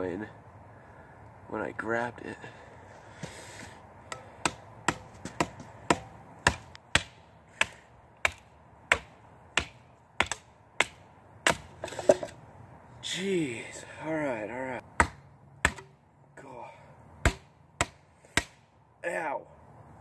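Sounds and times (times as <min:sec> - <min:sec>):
stick knocking on knife spine: 0:04.1 - 0:12.3.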